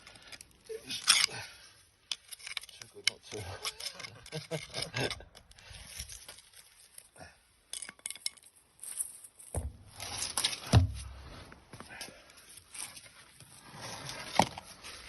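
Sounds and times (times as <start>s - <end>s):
metal tool scraping a drain: 2.1s - 5.4s.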